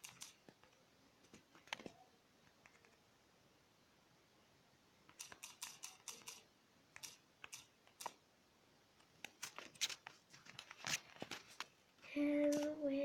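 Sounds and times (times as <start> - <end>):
typing on a phone: 0.0 - 0.8, 2.6 - 3.0, 5.1 - 8.2, 12.4 - 12.7.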